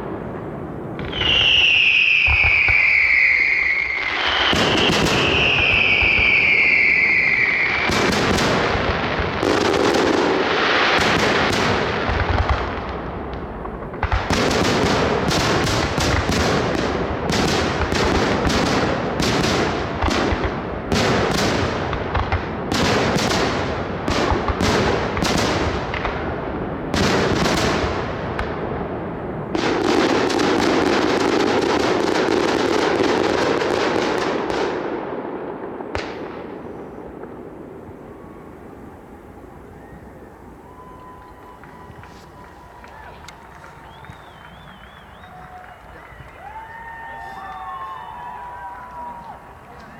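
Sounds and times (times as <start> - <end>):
firework bangs: 0.0 - 49.9
firework crackling: 0.0 - 49.9
firework falling whistle: 1.0 - 8.6, 36.7 - 49.6.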